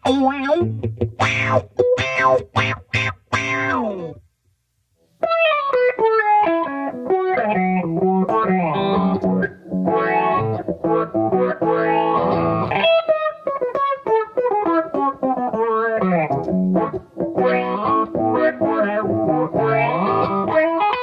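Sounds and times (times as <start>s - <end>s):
electric guitar through filter pedal: 5.2s - 21.0s.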